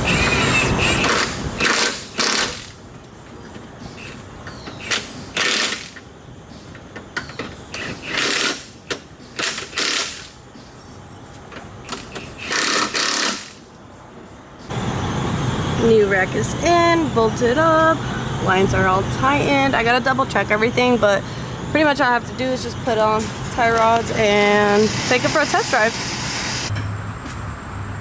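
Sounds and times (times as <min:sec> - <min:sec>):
pneumatic impact wrench bursts: 0:00.0 - 0:02.8, 0:04.0 - 0:06.0, 0:07.7 - 0:10.4, 0:11.8 - 0:13.6, 0:23.2 - 0:26.7.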